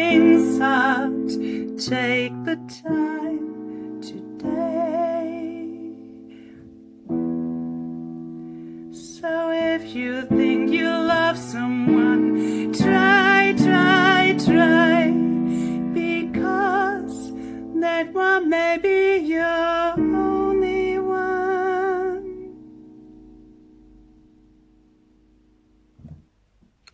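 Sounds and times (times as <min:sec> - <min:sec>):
woman singing with vibrato: 0:00.0 - 0:06.1, 0:09.0 - 0:22.6.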